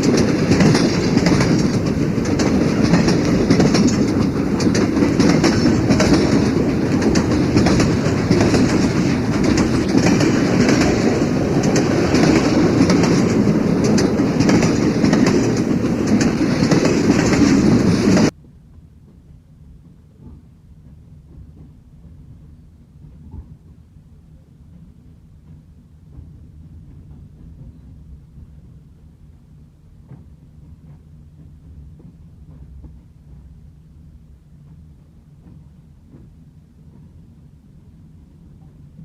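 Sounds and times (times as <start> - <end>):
wheels clicking on rail joints: 0.0 - 18.4
train wheels rumbling over rails: 0.0 - 39.0.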